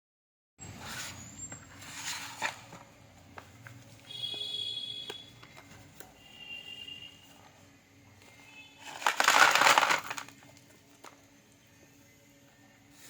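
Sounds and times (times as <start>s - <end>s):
packaging rustling: 8.8s - 10.4s.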